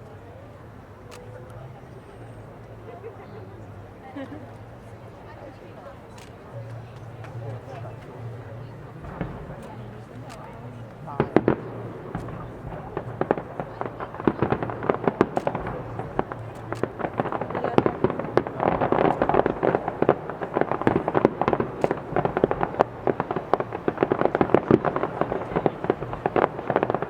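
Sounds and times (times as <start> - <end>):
fireworks bangs and crackles: 6.0 - 27.0.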